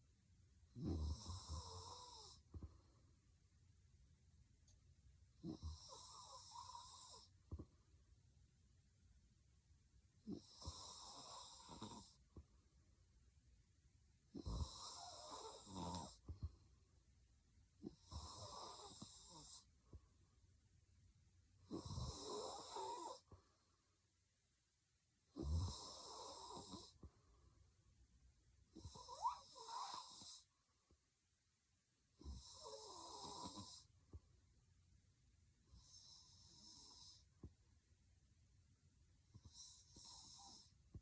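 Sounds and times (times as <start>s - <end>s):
woman snoring heavily: 0.8s - 2.4s, 5.4s - 7.3s, 10.3s - 12.2s, 14.4s - 16.2s, 17.9s - 19.7s, 21.7s - 23.3s, 25.4s - 27.0s, 28.8s - 30.5s, 32.2s - 33.9s, 39.4s - 40.7s.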